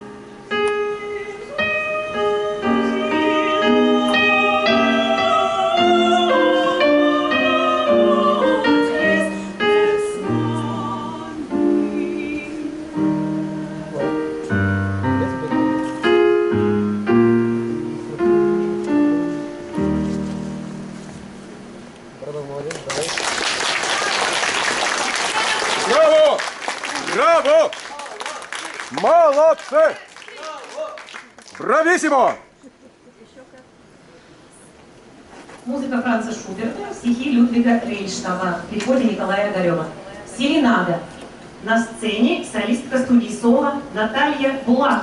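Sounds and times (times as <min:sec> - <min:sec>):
keyboard chords and melody: 0:11.5 - 0:22.2.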